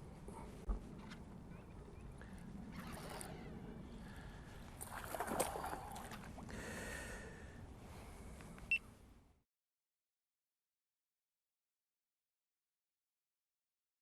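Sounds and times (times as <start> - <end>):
fish thrashing in water: 4.8 - 6.5.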